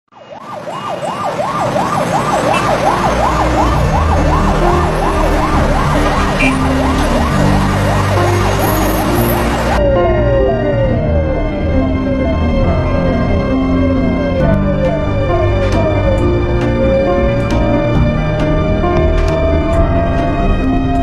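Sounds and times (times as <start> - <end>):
siren yelping: 0.1 - 21.0
traffic rumble: 0.4 - 21.0.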